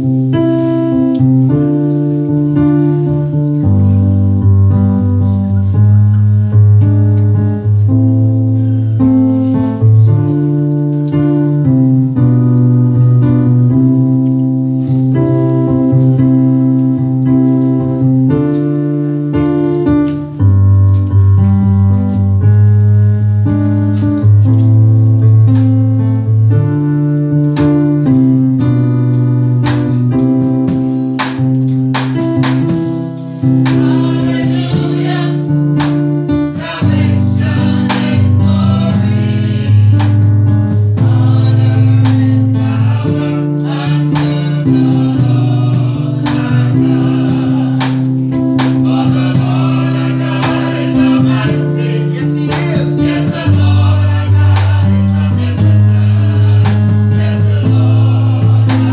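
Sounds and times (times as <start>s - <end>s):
sustained keyboard chords: 0.0s - 58.9s
heavy bass: 31.4s - 58.9s
gospel choir singing: 32.0s - 58.9s.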